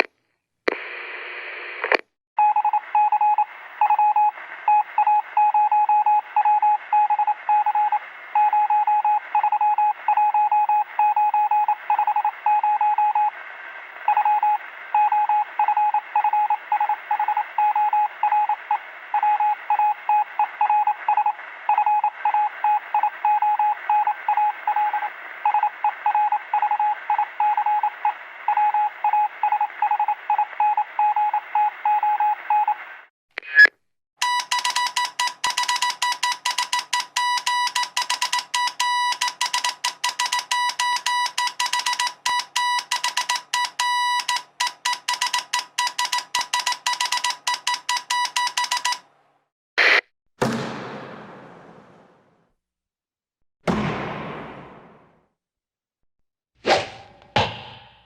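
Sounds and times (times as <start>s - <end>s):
morse code beeps: 2.4s - 13.3s, 14.1s - 18.6s, 19.2s - 32.8s, 34.2s - 49.0s.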